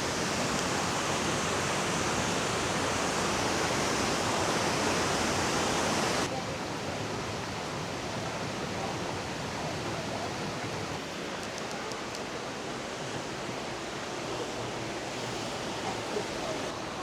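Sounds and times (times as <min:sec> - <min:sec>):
faint ticks: 0:11.4 - 0:12.3.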